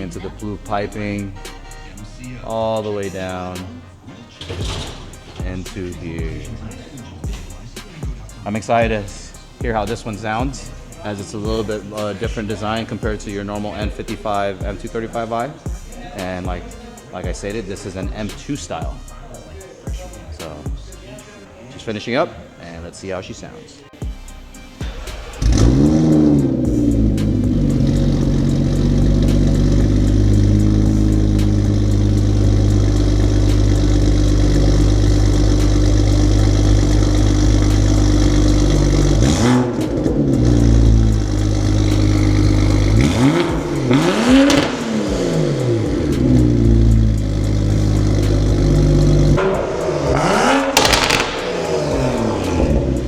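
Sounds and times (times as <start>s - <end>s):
car engine idling: 0.0s - 22.1s, 24.0s - 53.0s
engine revving in short blips: 25.0s - 53.0s.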